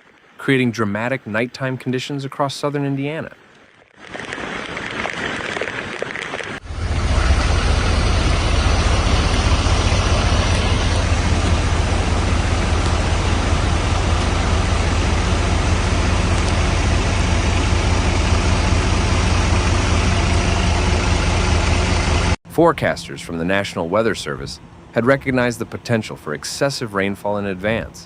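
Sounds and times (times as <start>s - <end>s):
vehicle engine running steadily: 6.6s - 25.8s.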